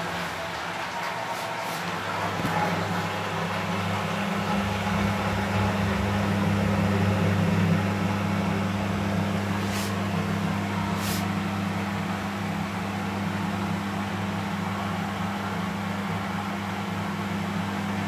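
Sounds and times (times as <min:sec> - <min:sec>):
washing machine motor hum: 0:00.0 - 0:18.0
brief hisses: 0:09.6 - 0:10.0, 0:11.0 - 0:11.3.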